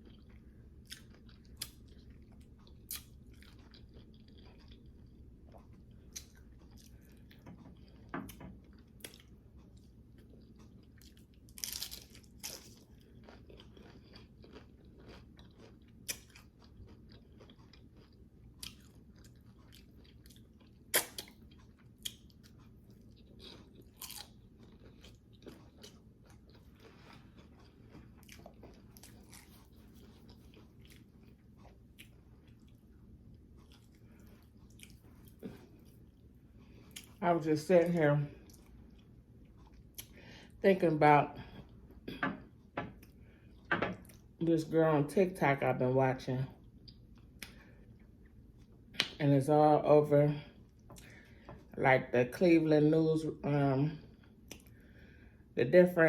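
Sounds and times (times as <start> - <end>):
person crunching hard taco shells: 11.4 - 22.3, 23.1 - 31.1.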